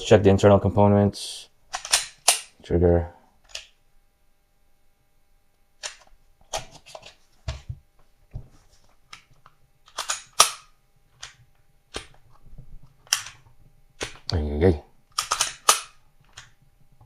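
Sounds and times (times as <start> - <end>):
metallic clicks of handgun: 1.7 - 2.5, 9.9 - 12.1, 15.2 - 16.6.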